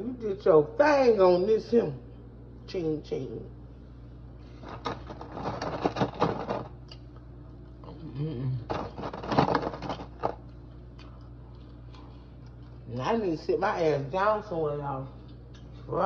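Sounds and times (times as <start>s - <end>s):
closed-mouth hum: 0.0s - 13.4s
close crackling and crunching: 4.5s - 12.9s.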